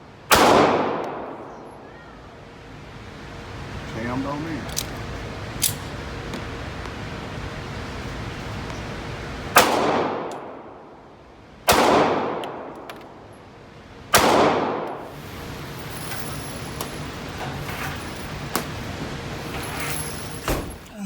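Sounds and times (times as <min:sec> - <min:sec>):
pistol shots echoing: 0:09.6 - 0:10.6, 0:11.7 - 0:12.8, 0:14.1 - 0:15.0.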